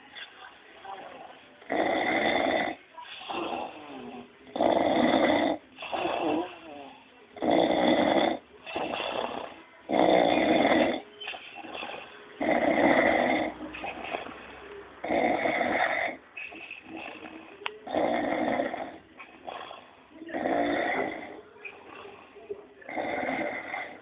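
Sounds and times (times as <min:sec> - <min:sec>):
man snoring: 0:01.7 - 0:11.0, 0:11.7 - 0:14.3, 0:15.0 - 0:22.1, 0:22.8 - 0:24.0
quiet breathing: 0:05.4 - 0:24.0.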